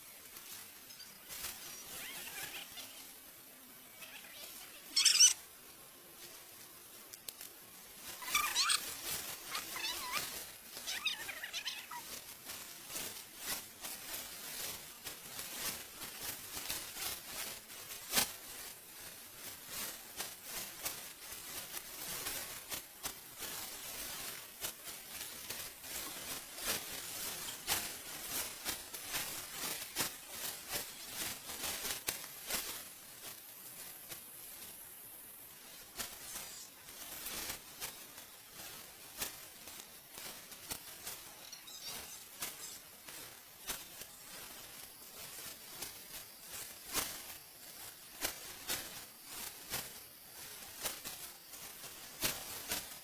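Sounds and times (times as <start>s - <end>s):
dry rice stalks rustling: 0.0s - 53.0s
high gliding animal calls: 1.7s - 3.2s, 3.9s - 5.4s, 8.1s - 12.1s, 41.4s - 42.8s.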